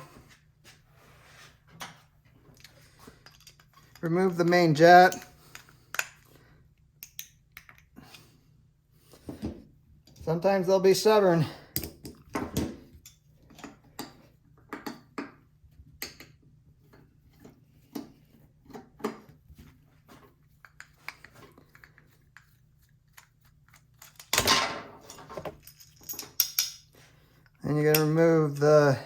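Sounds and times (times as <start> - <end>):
screwdriver and metal parts clicking: 2.6 - 6.3, 7.0 - 8.3, 20.6 - 29.0.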